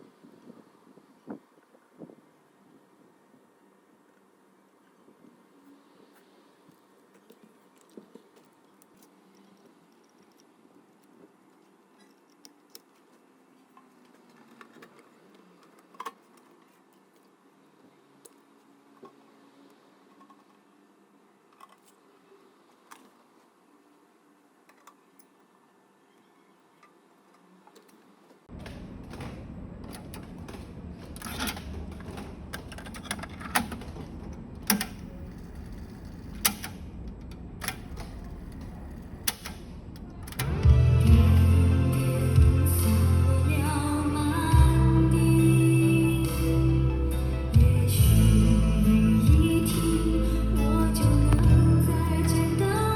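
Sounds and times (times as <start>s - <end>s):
low hiss and rumble: 28.5s - 52.9s.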